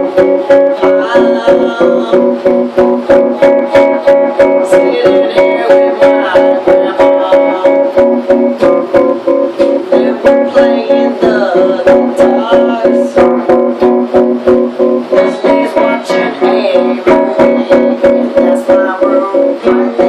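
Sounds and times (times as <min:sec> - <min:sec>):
guitar strumming: 0:00.0 - 0:20.0.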